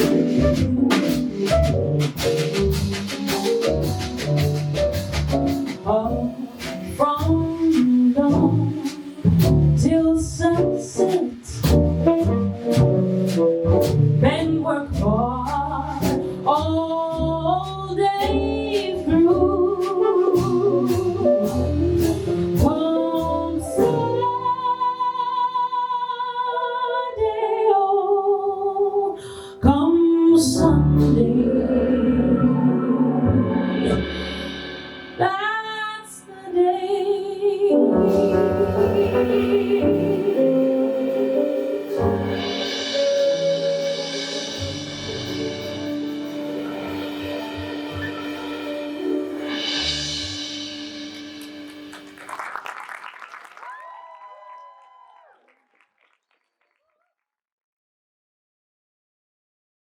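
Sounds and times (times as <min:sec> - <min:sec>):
woman singing jazz with vibrato: 0:00.0 - 0:04.0, 0:05.6 - 0:12.3, 0:14.1 - 0:34.3, 0:35.2 - 0:44.3
walking bass: 0:00.0 - 0:24.5
piano chords: 0:00.0 - 0:25.1, 0:30.2 - 0:36.0, 0:36.7 - 0:52.3.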